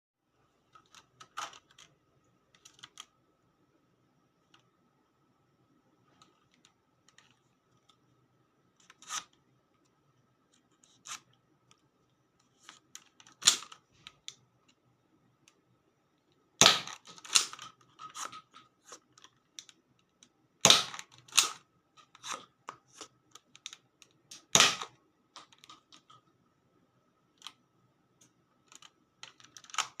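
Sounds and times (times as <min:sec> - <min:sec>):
plastic toy blaster clicks and rattles: 0:00.8 - 0:01.9, 0:12.6 - 0:14.4, 0:16.6 - 0:26.2, 0:28.6 - 0:30.0.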